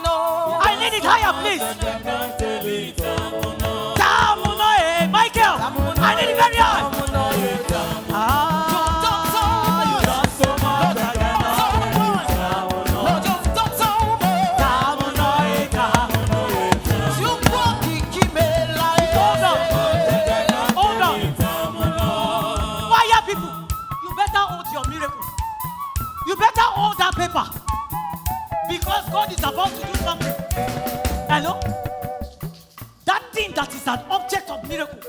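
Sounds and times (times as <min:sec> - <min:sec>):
voices singing held notes: 0:00.0 - 0:23.8
busy percussion: 0:00.0 - 0:35.0
gospel band playing: 0:00.0 - 0:35.0.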